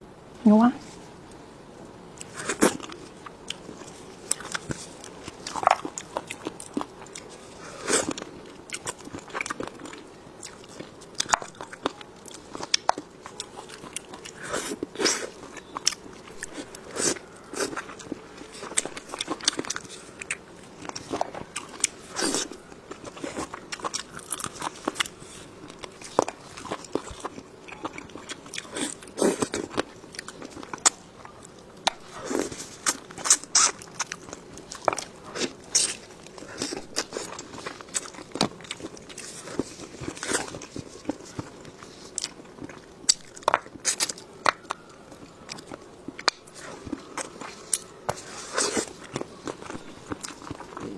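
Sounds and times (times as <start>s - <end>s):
chewing crunchy food: 2.2s - 50.9s.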